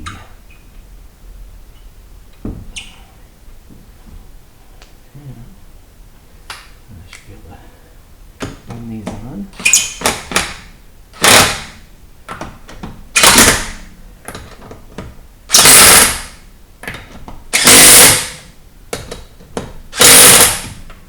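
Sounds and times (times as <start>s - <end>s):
impact wrench bursts: 11.2s - 11.8s, 13.1s - 13.9s, 15.5s - 16.4s, 17.5s - 18.5s, 19.9s - 20.9s.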